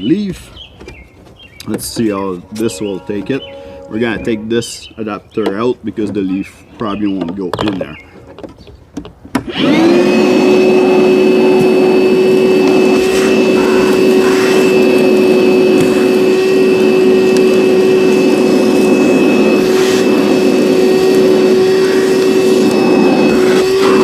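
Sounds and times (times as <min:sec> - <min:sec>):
vacuum motor whining: 0:09.4 - 0:24.0
vacuum sucking up debris: 0:09.5 - 0:24.0.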